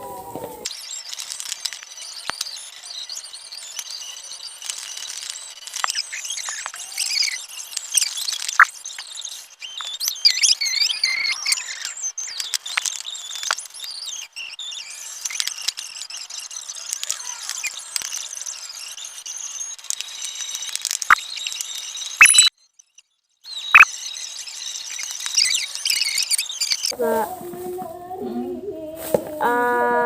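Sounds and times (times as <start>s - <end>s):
slime squelching and squeaking: 22.2s - 22.5s.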